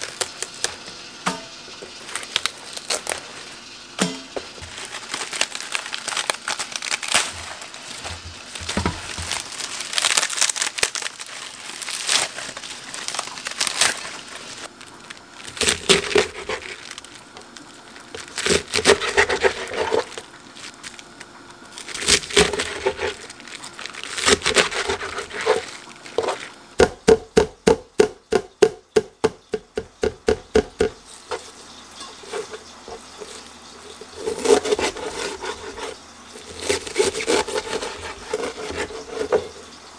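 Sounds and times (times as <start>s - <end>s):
cabbage leaves crunching and rustling: 0.0s - 0.7s, 2.0s - 3.5s, 4.2s - 26.7s, 31.0s - 39.6s
knife chopping on wooden board: 26.2s - 31.0s.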